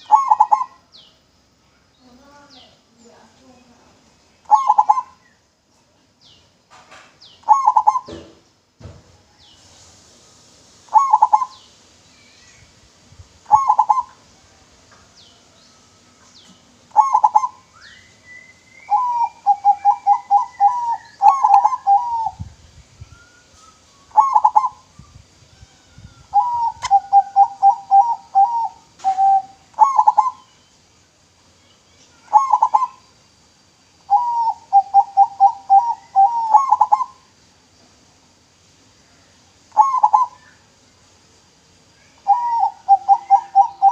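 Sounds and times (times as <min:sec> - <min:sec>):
dove cooing: 0:00.0 - 0:00.8, 0:04.5 - 0:05.2, 0:07.4 - 0:08.3, 0:10.9 - 0:11.6, 0:13.5 - 0:14.2, 0:16.9 - 0:17.6, 0:18.8 - 0:22.4, 0:24.1 - 0:24.9, 0:26.3 - 0:30.4, 0:32.3 - 0:33.0, 0:34.1 - 0:37.2, 0:39.8 - 0:40.4, 0:42.2 - 0:43.9
small birds chirping: 0:00.0 - 0:09.9, 0:10.9 - 0:43.9.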